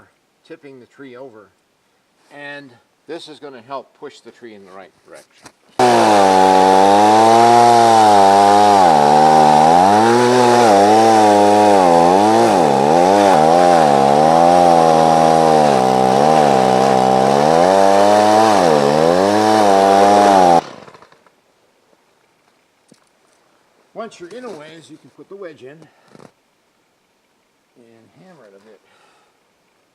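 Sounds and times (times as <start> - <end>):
chainsaw cutting tree trunk: 5.8 - 21.2.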